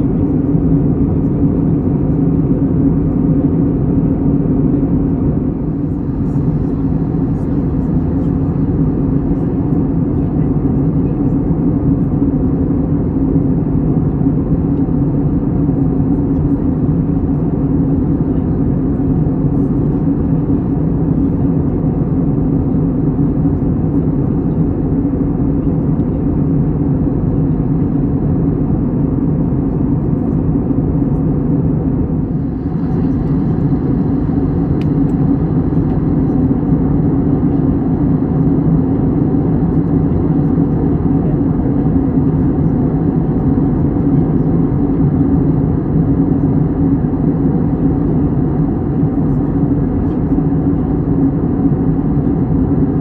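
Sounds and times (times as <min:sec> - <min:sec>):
vehicle drone: 0:04.4 - 0:10.5, 0:29.8 - 0:48.5.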